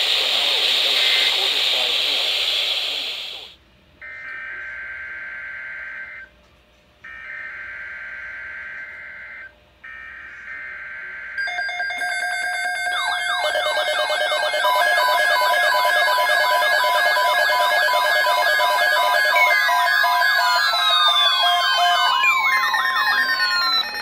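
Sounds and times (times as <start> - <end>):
warbling electronic alert tone: 11.4 - 24.0
buzzy digital data bursts: 12.2 - 24.0.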